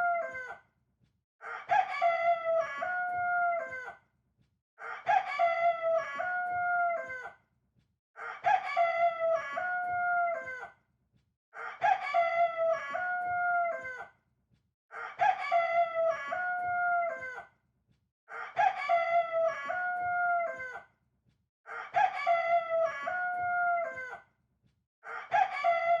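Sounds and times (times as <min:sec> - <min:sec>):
rooster crowing: 0:00.0 - 0:00.6, 0:01.4 - 0:03.9, 0:04.8 - 0:07.3, 0:08.2 - 0:10.7, 0:11.6 - 0:14.1, 0:15.0 - 0:17.5, 0:18.3 - 0:20.8, 0:21.7 - 0:24.2, 0:25.1 - 0:26.0.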